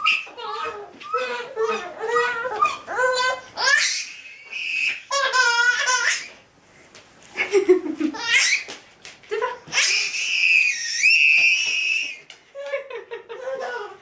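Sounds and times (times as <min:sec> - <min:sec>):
baby squealing and laughing: 0:00.0 - 0:06.4, 0:08.1 - 0:08.7, 0:09.7 - 0:12.3.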